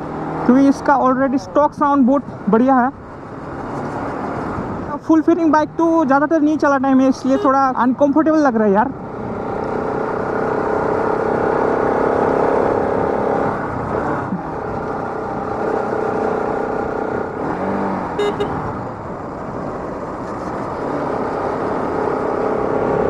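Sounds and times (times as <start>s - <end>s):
motorcycle engine running: 18.1s - 22.8s.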